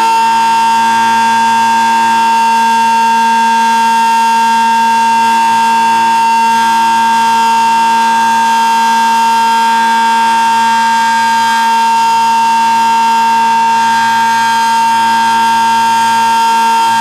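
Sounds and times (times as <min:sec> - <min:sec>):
outdoor warning siren: 0:00.0 - 0:17.0.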